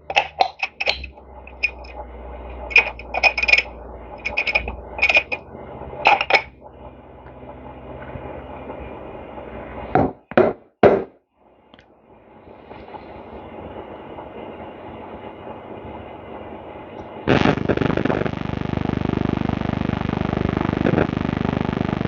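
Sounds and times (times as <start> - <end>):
low steady hum: 0.0 - 10.0, 11.5 - 22.0
small metal parts clinking: 0.1 - 1.9, 2.7 - 5.4.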